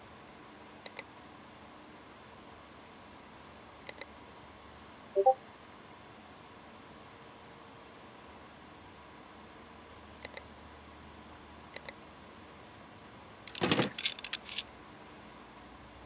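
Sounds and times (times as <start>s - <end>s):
small hard parts clicking: 13.5s - 14.6s.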